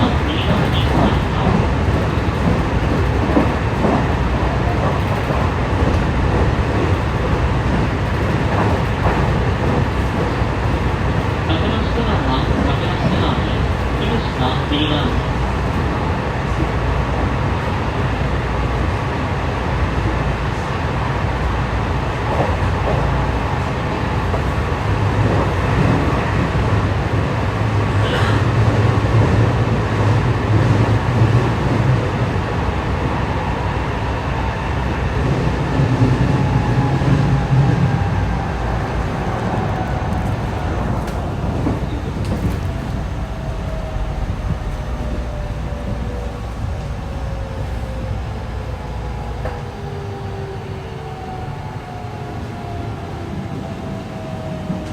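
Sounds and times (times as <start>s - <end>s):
train wheels rumbling on rail: 0.0s - 54.9s
faint train whine: 32.3s - 54.9s.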